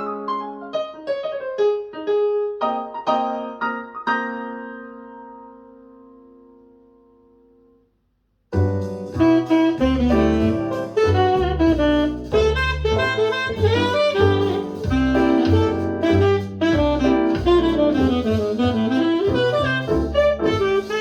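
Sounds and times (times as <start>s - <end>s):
jazz music with saxophone: 8.6s - 21.0s.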